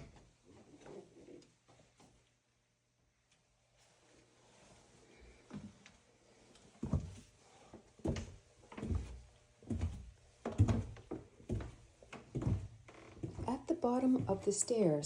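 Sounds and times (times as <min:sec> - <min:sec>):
heavy footsteps on stairs: 0:08.0 - 0:14.5.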